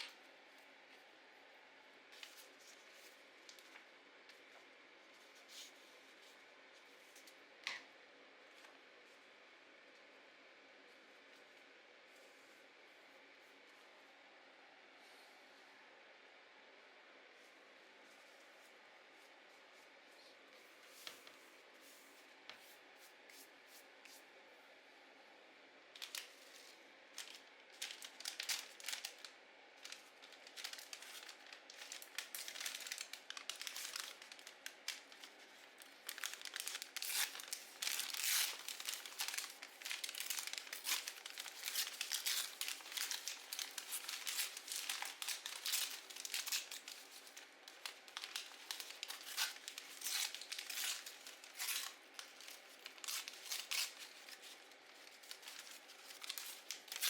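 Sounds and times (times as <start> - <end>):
paper crinkling and tearing: 26.0 - 57.0.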